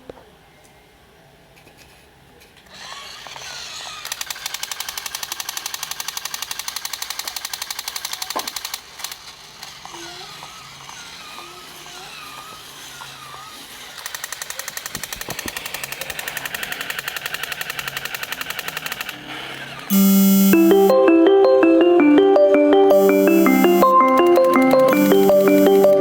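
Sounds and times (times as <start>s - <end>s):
toy motor clicking rattle: 2.7s - 19.9s, 23.0s - 26.0s.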